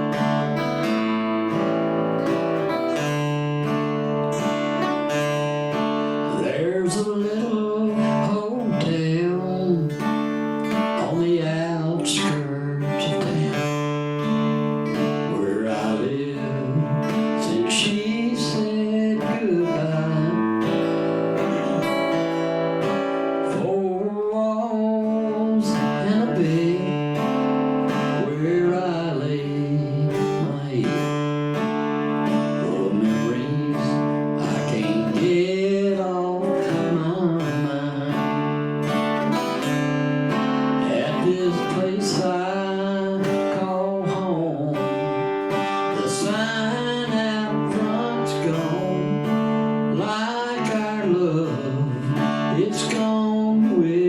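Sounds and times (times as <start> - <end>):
man singing: 0.0 - 54.0
strummed acoustic guitar: 0.0 - 54.0.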